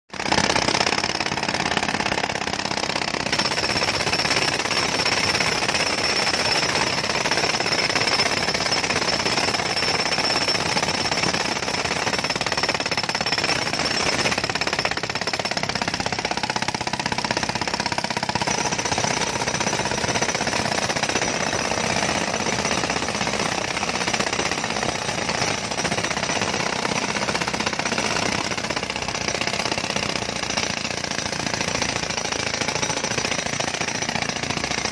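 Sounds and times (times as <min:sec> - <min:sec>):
jackhammer hammering road: 0:00.2 - 0:34.9.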